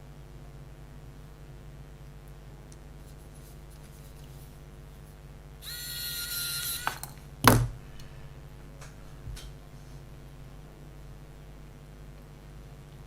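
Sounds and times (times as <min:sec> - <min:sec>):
camera flash charging whine: 0:05.6 - 0:07.2.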